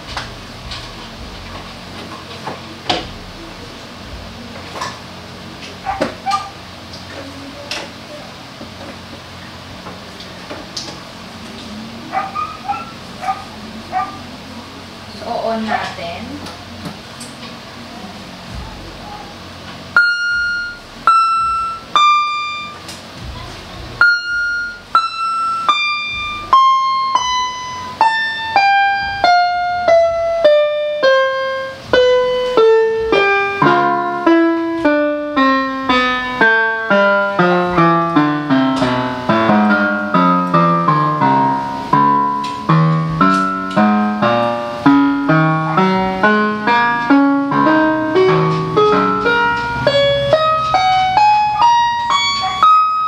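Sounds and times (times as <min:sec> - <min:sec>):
electronic keyboard single notes: 0:19.9 - 0:53.0.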